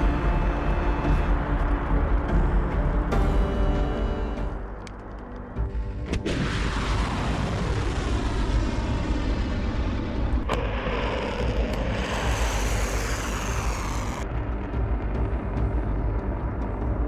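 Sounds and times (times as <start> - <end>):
sharp explosion blasts: 6.1 - 14.9
deep rumbling roar: 6.5 - 17.0.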